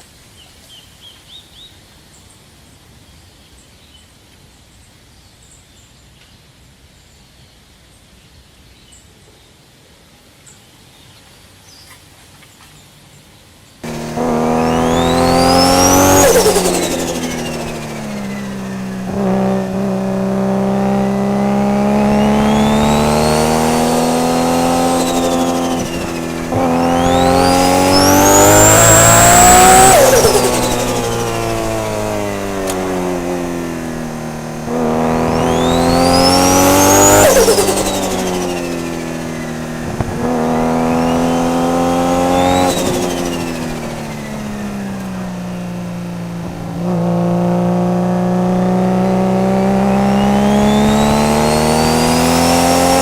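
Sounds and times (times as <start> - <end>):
car engine revving: 13.8 - 53.0.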